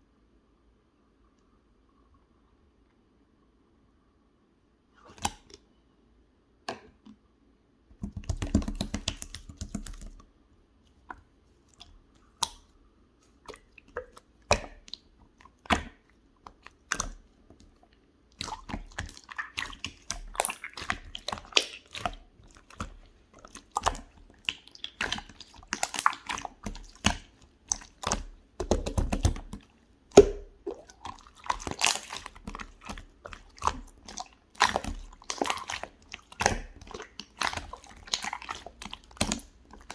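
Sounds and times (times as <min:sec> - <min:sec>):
slime clicking and crackling: 0:18.4 - 0:39.9.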